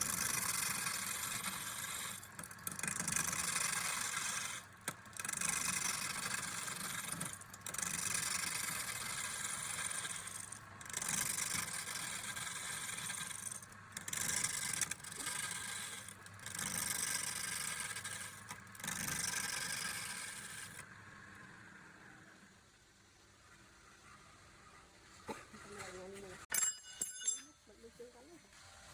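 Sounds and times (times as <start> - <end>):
tool scraping wood: 0.0 - 20.8.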